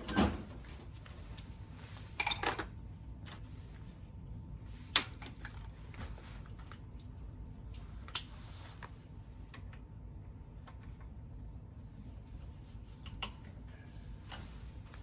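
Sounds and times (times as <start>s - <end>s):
metal tools clinking and knocking: 2.2s - 2.7s.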